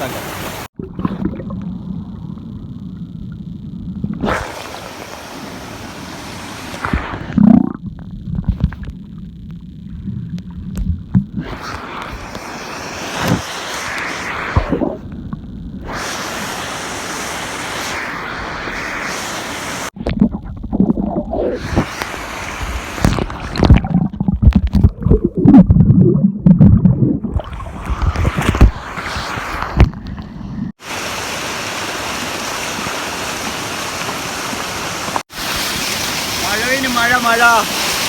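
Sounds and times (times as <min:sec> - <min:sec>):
rushing river water: 0:04.4 - 0:07.2, 0:30.8 - 0:38.0.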